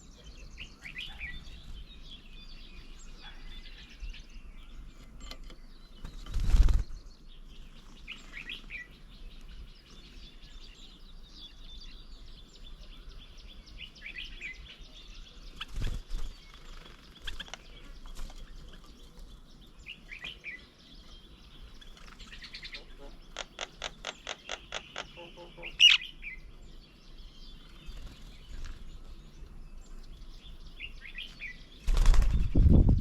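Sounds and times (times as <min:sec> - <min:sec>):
bird chirping: 0:00.0 - 0:33.0
wings fluttering: 0:06.0 - 0:07.1, 0:15.5 - 0:19.4, 0:27.6 - 0:29.1, 0:31.2 - 0:33.0.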